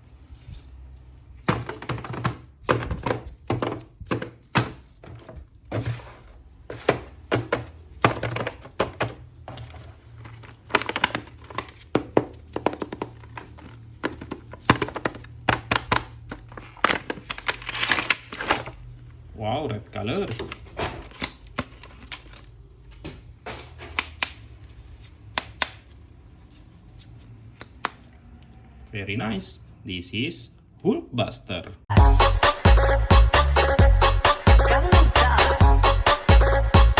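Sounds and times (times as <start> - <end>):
plastic toy parts knocking: 1.4 - 5.8, 6.7 - 17.4.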